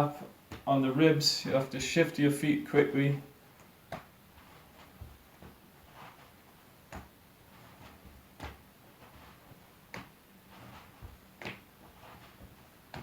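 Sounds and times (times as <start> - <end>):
soft clothing rustling: 0.0 - 13.0
hands patting against body: 3.6 - 13.0.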